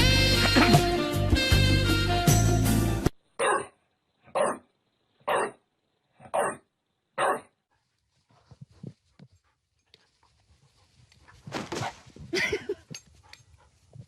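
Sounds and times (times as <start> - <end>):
dog barking: 3.4 - 4.7, 5.3 - 5.6, 6.3 - 7.5.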